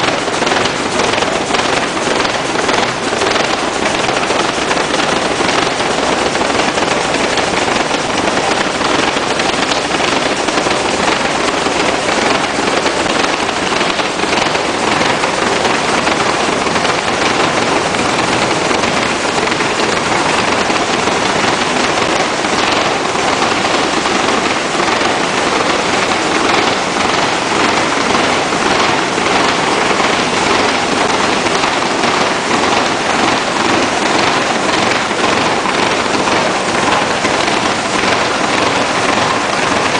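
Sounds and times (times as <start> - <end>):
engine running with rapid exhaust beat: 0.0 - 39.9.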